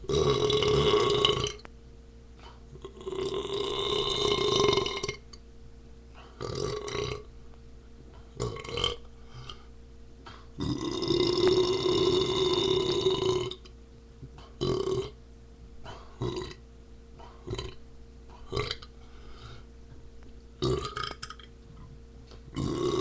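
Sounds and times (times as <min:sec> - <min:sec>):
person burping: 0:00.0 - 0:01.6, 0:02.7 - 0:05.3, 0:06.2 - 0:07.3, 0:08.4 - 0:09.6, 0:10.3 - 0:13.7, 0:14.5 - 0:15.2, 0:15.8 - 0:16.6, 0:17.2 - 0:17.8, 0:18.4 - 0:18.9, 0:20.6 - 0:21.5, 0:22.5 - 0:23.0.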